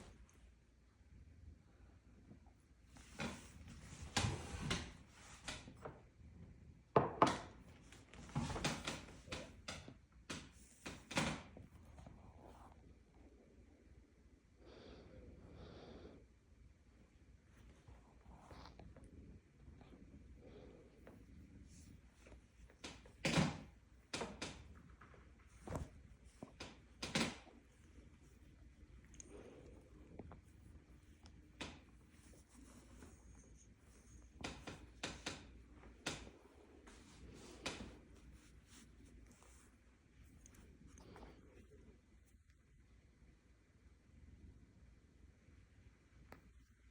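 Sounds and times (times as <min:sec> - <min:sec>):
soft knocks and rustles: 0:02.9 - 0:06.1, 0:06.9 - 0:12.2
brushing sounds: 0:25.2 - 0:41.8.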